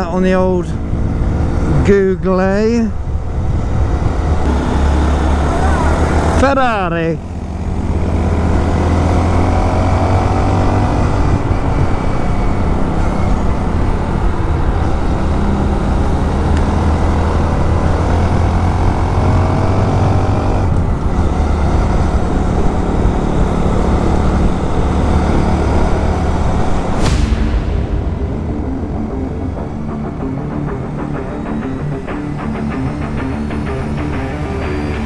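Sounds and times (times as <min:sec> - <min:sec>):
wind and road noise: 0:00.0 - 0:35.0
motorcycle engine running: 0:03.0 - 0:06.6
short rushing burst: 0:26.8 - 0:33.5.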